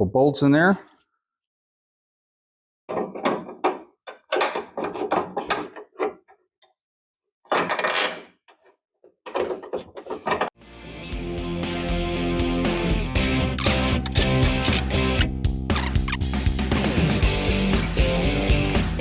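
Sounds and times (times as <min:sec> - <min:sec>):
metallic clicks and clinks: 0:12.9 - 0:14.8, 0:18.3 - 0:19.0.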